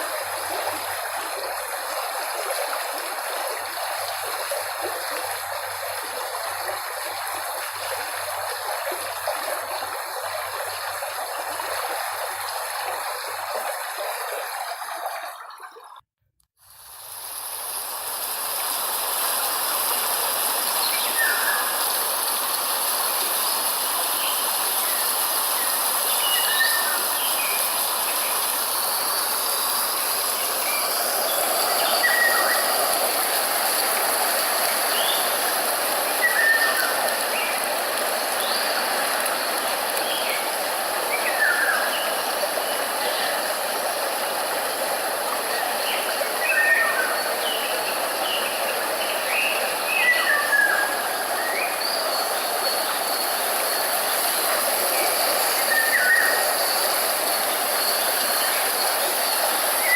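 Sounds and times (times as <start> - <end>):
stream water rushing: 0.0 - 15.6, 16.8 - 59.9
steady hiss: 16.6 - 59.9.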